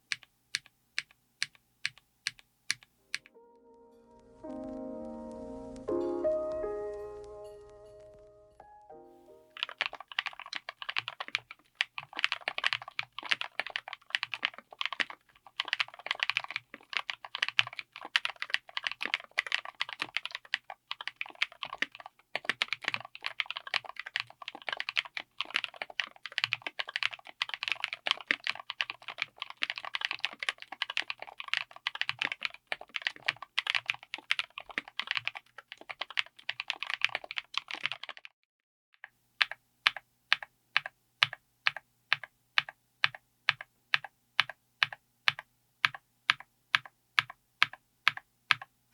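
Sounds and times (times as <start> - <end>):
fast mechanical keyboard typing: 9.6 - 38.3, 39.4 - 48.7.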